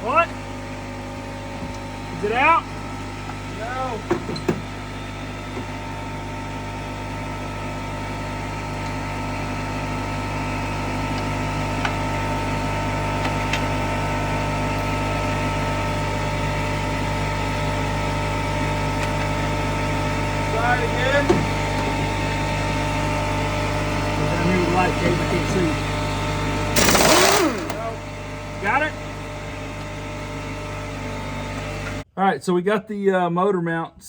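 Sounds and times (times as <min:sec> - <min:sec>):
air compressor motor humming: 0:14.0 - 0:32.0.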